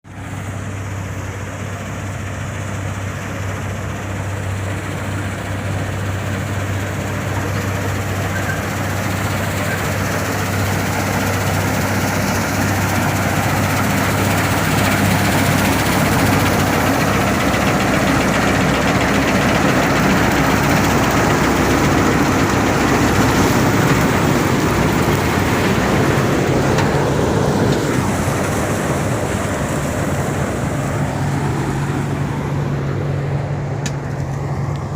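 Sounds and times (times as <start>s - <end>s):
harvester engine and clatter: 0.0s - 34.9s.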